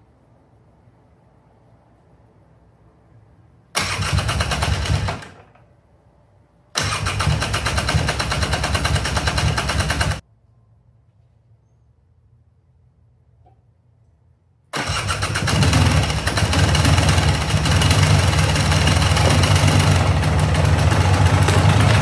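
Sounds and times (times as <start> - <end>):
electric starter cranking engine: 3.8 - 5.6, 6.8 - 10.2, 14.8 - 22.0.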